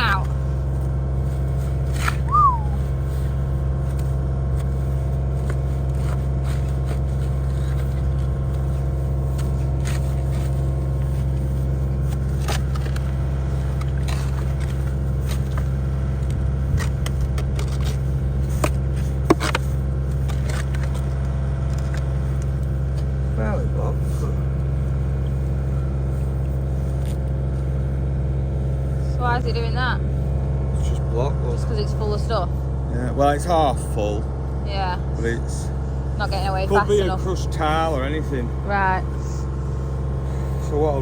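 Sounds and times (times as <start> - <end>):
engine idling: 0.0 - 41.0.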